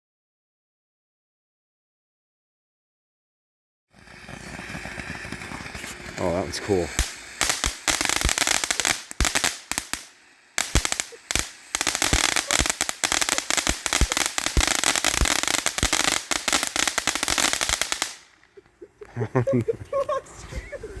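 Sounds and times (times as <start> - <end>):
fireworks crackling pops: 4.0 - 18.8.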